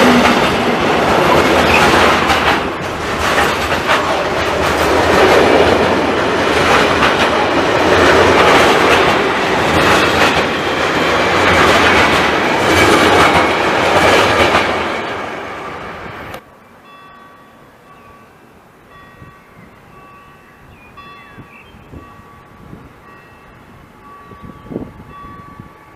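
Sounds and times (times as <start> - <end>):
wheels clacking over rails: 0.0 - 16.4
train rumbling past: 0.0 - 25.9.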